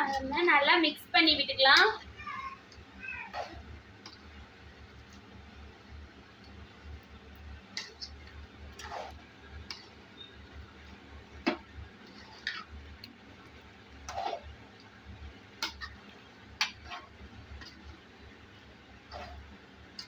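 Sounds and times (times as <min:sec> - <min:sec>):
spoon scraping and knocking in pan: 0:10.9 - 0:12.8, 0:14.0 - 0:14.5.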